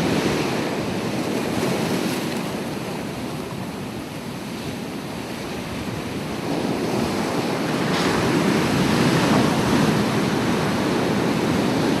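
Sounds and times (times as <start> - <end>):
ocean waves breaking on shore: 0.0 - 12.0.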